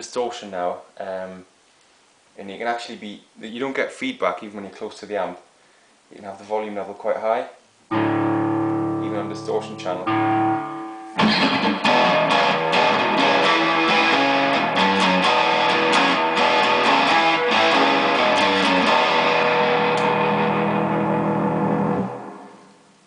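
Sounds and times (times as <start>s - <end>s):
distorted acoustic guitar chords: 7.9s - 23.0s.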